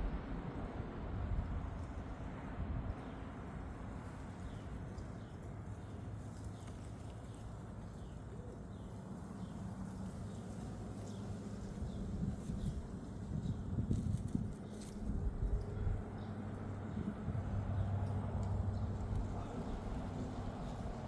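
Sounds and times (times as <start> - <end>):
wind on microphone: 11.6 - 16.2.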